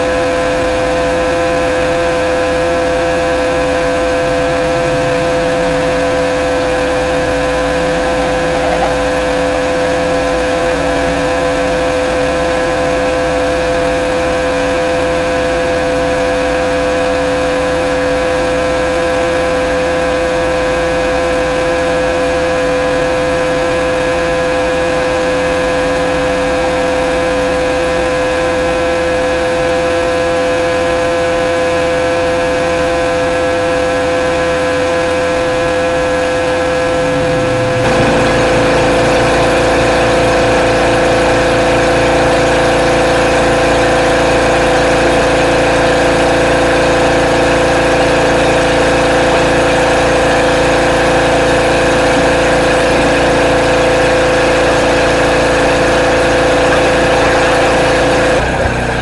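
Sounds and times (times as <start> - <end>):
pressure washer running: 0.0 - 20.2, 35.1 - 59.0
low hum: 0.4 - 15.9, 35.5 - 59.0.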